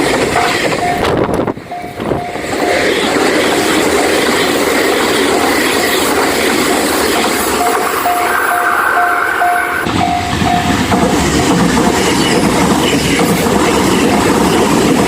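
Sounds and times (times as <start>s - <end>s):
train rumble and wheel clatter: 0.0s - 15.0s
level crossing alarm dinging: 7.5s - 10.9s.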